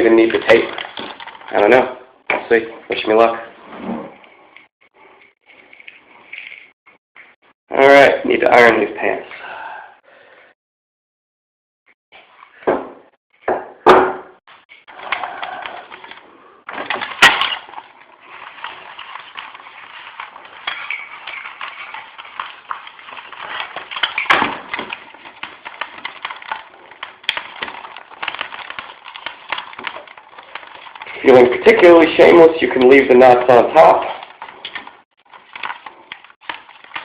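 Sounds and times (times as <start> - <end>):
sharp knocks: 12.6 - 14.4.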